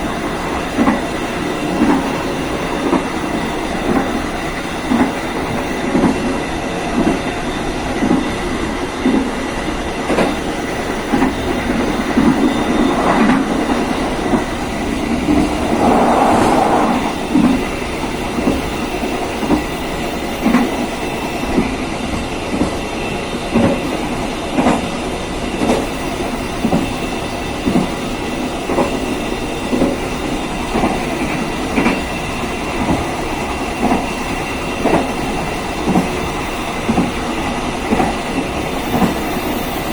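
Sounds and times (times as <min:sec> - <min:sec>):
train rumble on rails: 0:00.0 - 0:39.9
wheels clicking over track: 0:10.1 - 0:17.7
rushing noise: 0:14.2 - 0:17.9.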